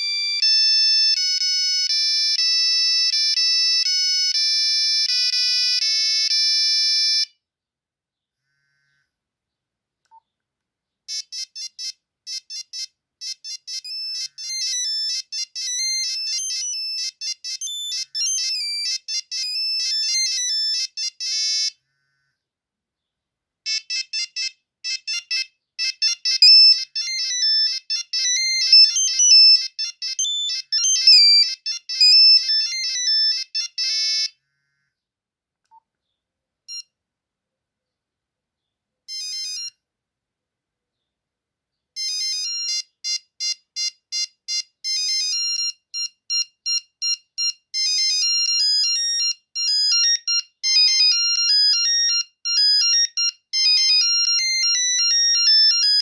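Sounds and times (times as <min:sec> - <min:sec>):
electronic ringtone beeps: 0:00.0 - 0:07.4, 0:11.1 - 0:21.8, 0:23.7 - 0:34.3, 0:36.7 - 0:36.9, 0:39.1 - 0:39.8, 0:42.0 - 0:56.0.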